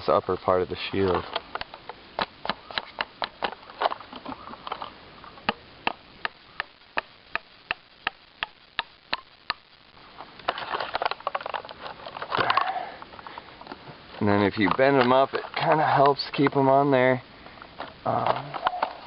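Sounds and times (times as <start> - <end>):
scraping and rustling: 10.1 - 19.0.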